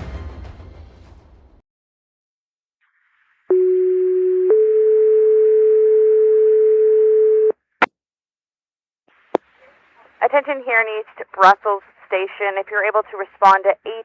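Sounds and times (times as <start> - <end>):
faint radio hiss: 9.1 - 14.0
two-tone radio page: 9.4 - 14.0.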